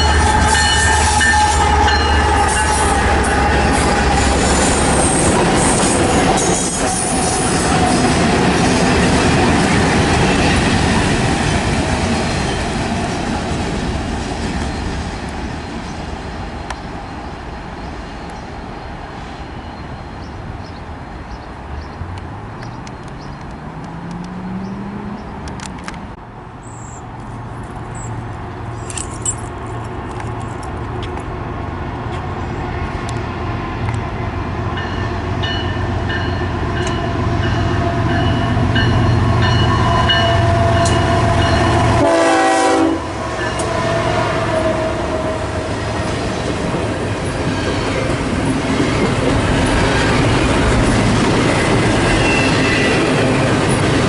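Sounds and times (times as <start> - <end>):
train horn: 0.0 - 8.0, 37.4 - 46.0
diesel locomotive engine rumble: 0.0 - 54.0
train wheels clattering on rails: 44.6 - 54.0.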